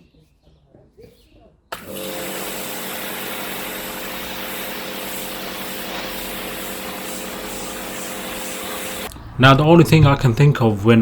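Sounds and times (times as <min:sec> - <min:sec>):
pressure washer running: 0:01.7 - 0:09.1.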